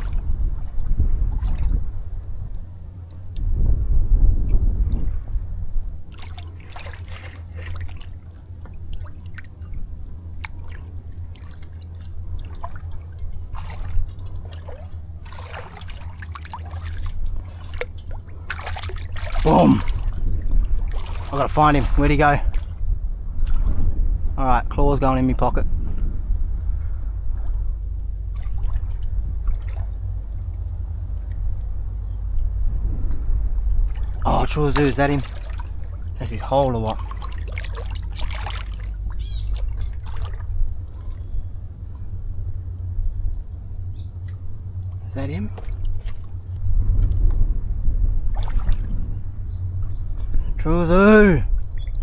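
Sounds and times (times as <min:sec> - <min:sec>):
water splashing and trickling: 0:00.0 - 0:03.6, 0:04.8 - 0:23.7, 0:27.9 - 0:32.7, 0:33.8 - 0:47.2, 0:48.2 - 0:52.0
low rumble: 0:00.0 - 0:52.0
wet clicks and splats: 0:06.1 - 0:20.2, 0:34.7 - 0:41.3.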